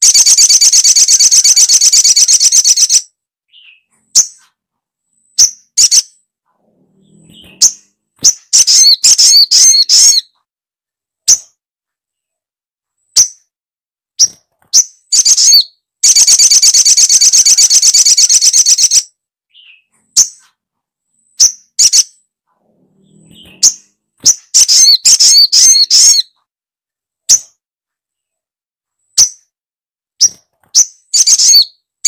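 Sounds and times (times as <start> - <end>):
fast rattling bird trill: 0.0 - 4.4, 7.1 - 10.2, 14.2 - 20.4, 23.1 - 26.2
rapid chattering bird calls: 0.0 - 4.5, 14.2 - 20.5
high bird chips: 7.2 - 10.2.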